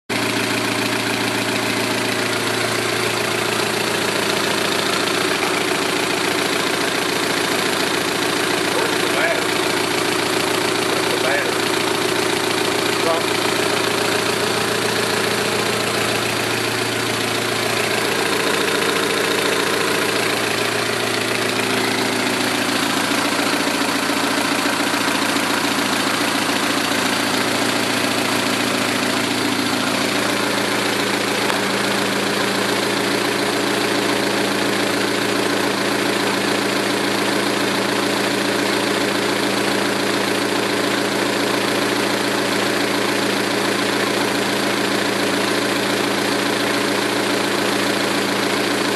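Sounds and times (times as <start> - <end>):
car engine idling: 0.1 - 48.9
engine lifter tick: 31.4 - 31.6.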